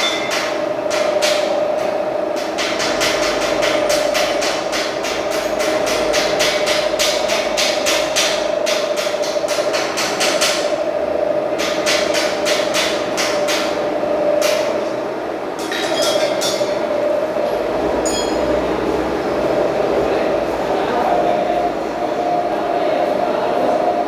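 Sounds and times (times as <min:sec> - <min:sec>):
machine hum: 0:10.4 - 0:24.0.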